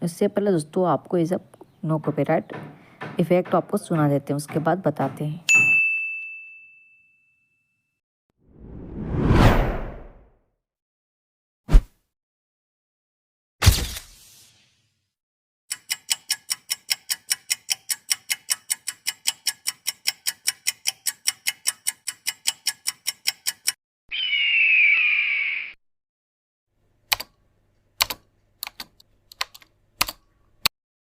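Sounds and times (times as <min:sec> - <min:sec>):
fast even ticking: 0:15.7 - 0:23.8
scattered sharp clicks: 0:15.7 - 0:23.8, 0:28.0 - 0:30.2
wavering falling whistle tone: 0:24.1 - 0:25.8.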